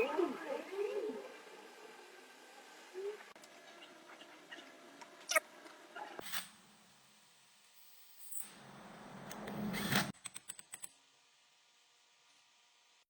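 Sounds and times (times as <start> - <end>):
small clicks: 9.3 - 11.0.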